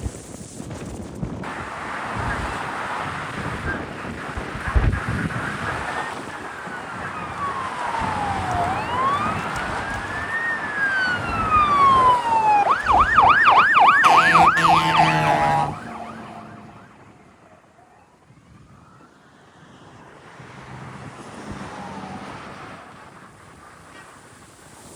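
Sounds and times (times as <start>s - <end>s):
emergency siren wailing and yelping: 5.2s - 19.0s
low steady horn tone: 12.9s - 17.0s.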